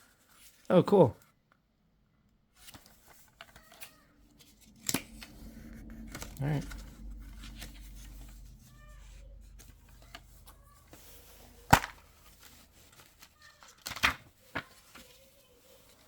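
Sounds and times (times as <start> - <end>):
hands rustling disc case: 10.9 - 15.3.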